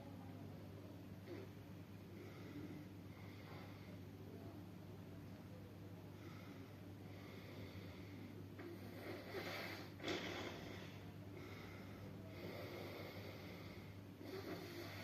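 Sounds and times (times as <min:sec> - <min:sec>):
person breathing: 0:02.1 - 0:04.0, 0:06.1 - 0:15.0.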